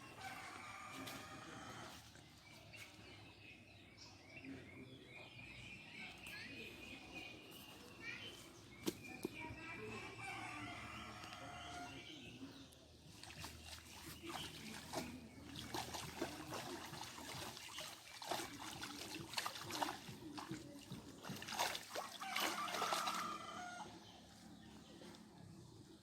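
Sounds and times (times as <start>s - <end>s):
water splashing and trickling: 6.0s - 25.3s.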